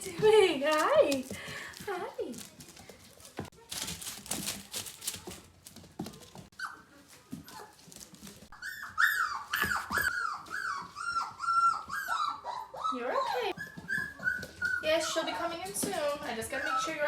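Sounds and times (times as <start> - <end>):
puppy whimpering: 8.5 - 17.0.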